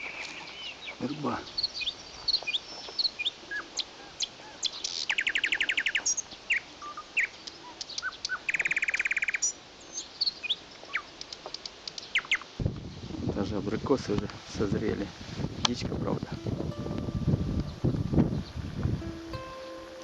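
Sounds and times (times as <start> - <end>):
songbirds chirping: 0.0 - 13.1, 15.6 - 20.0.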